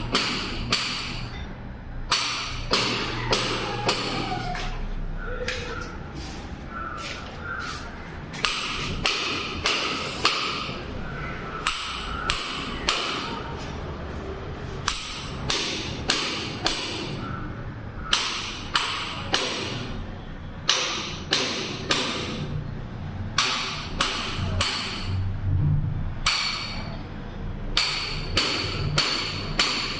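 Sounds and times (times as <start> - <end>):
ringing hammer blows: 14.8 - 17.2.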